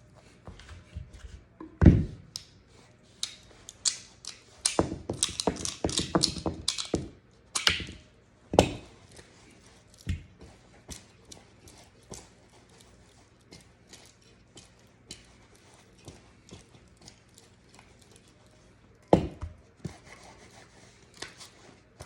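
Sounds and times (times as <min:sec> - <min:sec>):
pistol parts clicking and knocking: 0:03.2 - 0:08.0.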